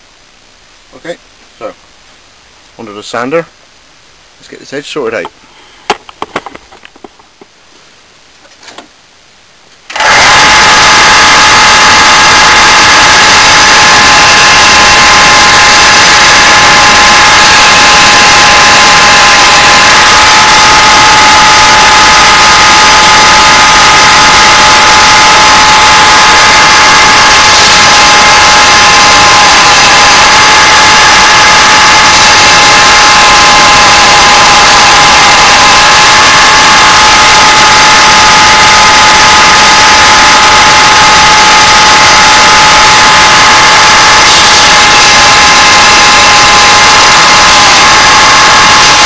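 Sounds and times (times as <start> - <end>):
electric sander grinding metal: 10.0 - 12.0.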